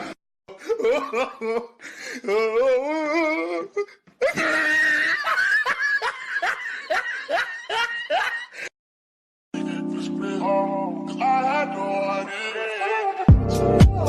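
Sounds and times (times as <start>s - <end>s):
person laughing hard: 0.5s - 2.8s, 3.8s - 8.7s
music: 9.6s - 12.2s, 13.3s - 14.0s.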